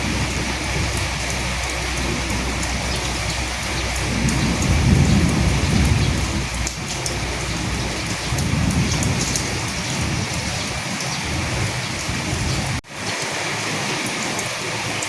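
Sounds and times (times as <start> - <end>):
low thunder rumble: 0.0 - 12.8
steady rain falling: 0.0 - 15.0.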